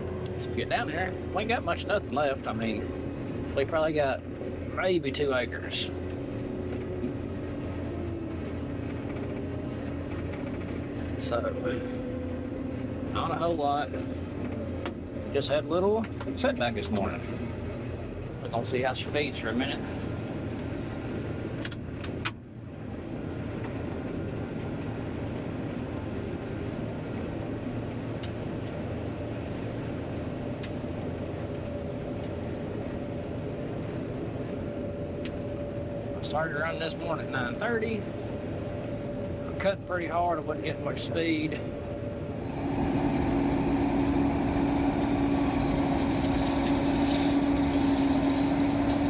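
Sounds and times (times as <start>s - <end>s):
combine harvester running: 0.0s - 49.0s
steady tone: 33.0s - 49.0s.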